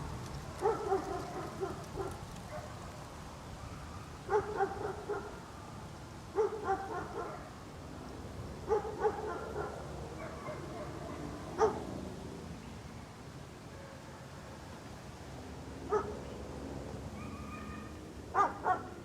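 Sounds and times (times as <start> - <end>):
dog barking: 0.6 - 2.8, 4.3 - 5.4, 6.4 - 7.5, 8.7 - 11.9, 15.9 - 16.2, 17.2 - 19.0.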